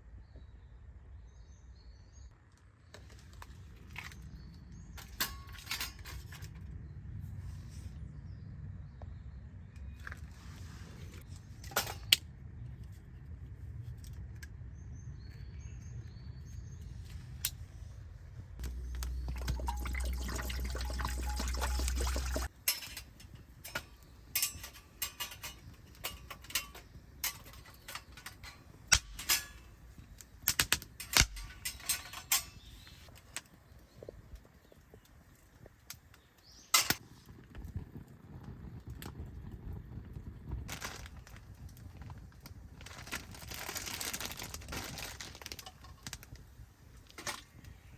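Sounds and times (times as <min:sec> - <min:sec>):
water being poured: 0:18.6 - 0:22.5
cookware clinking: 0:18.7 - 0:23.0.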